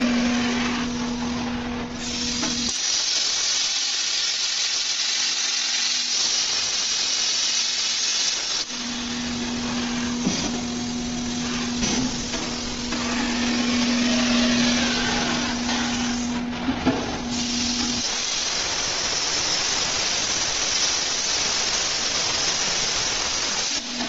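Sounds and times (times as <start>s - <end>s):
machine hum: 0.0s - 2.9s, 5.0s - 24.0s
plasma cutter hiss: 2.0s - 16.3s, 17.3s - 24.0s.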